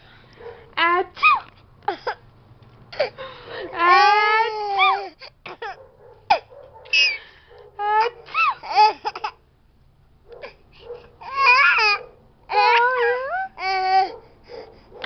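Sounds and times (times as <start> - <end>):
high-pitched vocal cries: 0.9 - 2.2, 3.0 - 9.4, 11.2 - 14.1.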